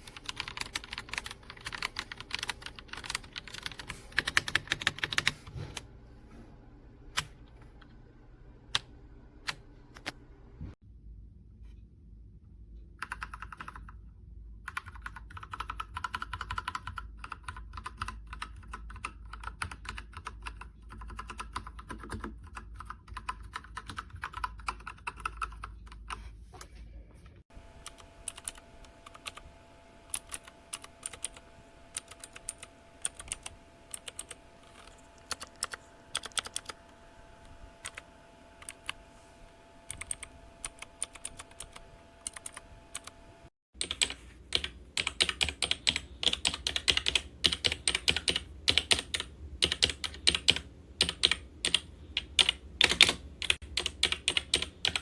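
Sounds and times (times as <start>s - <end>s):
faint steady hum: 0.0s - 55.0s
mechanical keyboard typing: 0.1s - 5.5s, 13.0s - 14.0s, 14.7s - 26.1s, 27.8s - 29.5s, 30.1s - 38.0s, 38.6s - 39.0s, 39.9s - 43.2s, 43.8s - 55.0s.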